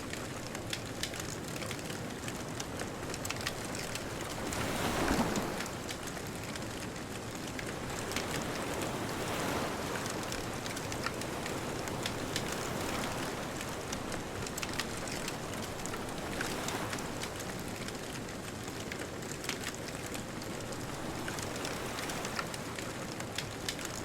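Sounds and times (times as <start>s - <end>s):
bonfire crackling and popping: 0.0s - 24.0s
distant ocean surf: 3.2s - 6.6s, 7.5s - 17.9s.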